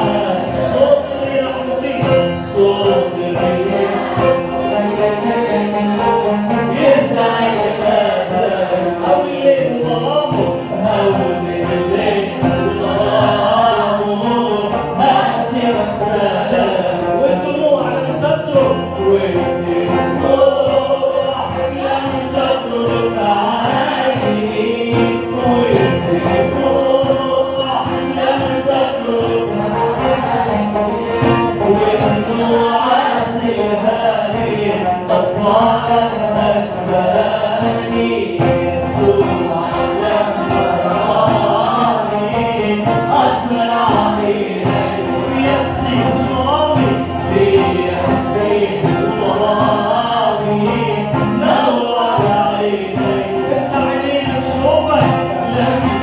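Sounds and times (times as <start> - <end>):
choir singing a hymn: 0.0 - 56.0
instrumental accompaniment: 0.0 - 56.0.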